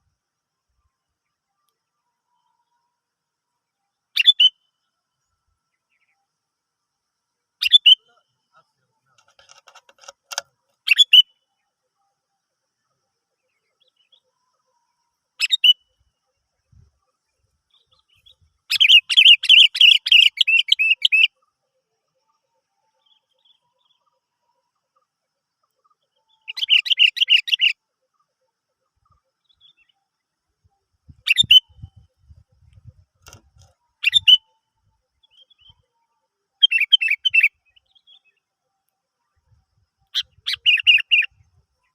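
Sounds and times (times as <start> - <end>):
bird calling: 4.2 - 4.7, 7.6 - 11.3, 15.4 - 15.9, 17.8 - 21.4, 26.3 - 27.8, 31.2 - 31.9, 34.0 - 34.5, 36.6 - 38.2, 40.1 - 41.3.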